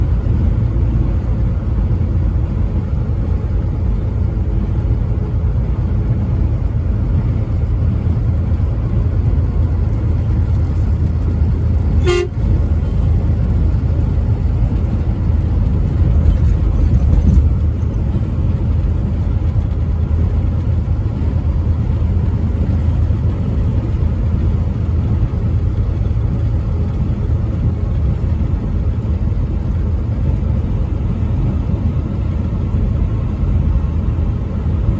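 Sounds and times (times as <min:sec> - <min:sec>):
truck engine and road noise: 0:00.0 - 0:34.9
truck horn: 0:11.8 - 0:13.0.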